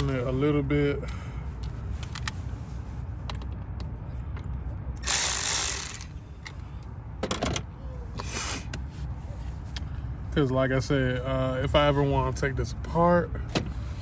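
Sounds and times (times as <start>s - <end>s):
socket ratchet clicking: 5.0s - 6.1s.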